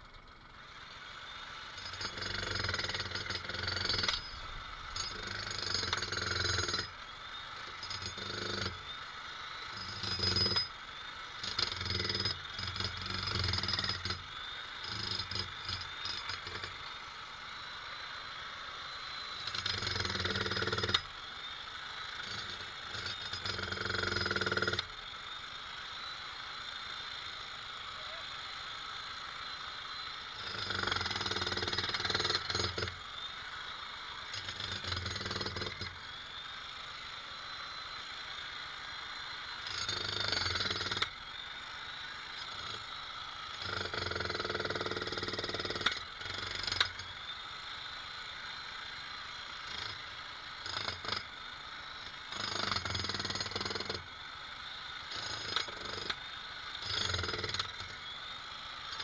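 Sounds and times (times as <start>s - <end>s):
jackhammer hammering: 1.6s - 9.0s, 9.6s - 17.4s, 19.1s - 21.2s, 22.2s - 25.0s, 29.9s - 36.2s, 38.4s - 47.3s, 49.0s - 51.4s, 52.0s - 54.2s, 55.0s - 58.2s, 58.8s - 59.0s.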